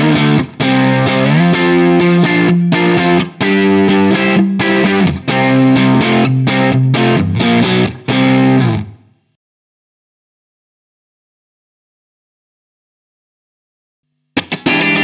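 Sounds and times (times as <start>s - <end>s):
distorted electric guitar riff: 0.0s - 9.1s, 14.4s - 15.0s.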